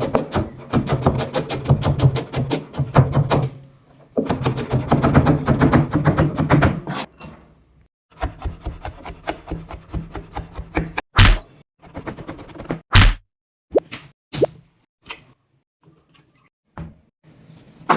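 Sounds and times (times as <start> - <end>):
knife chopping on wooden board: 8.1 - 11.4.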